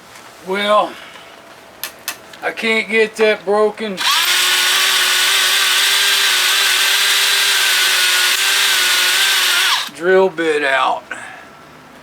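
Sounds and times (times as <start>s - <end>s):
electric drill whining: 4.0s - 9.9s.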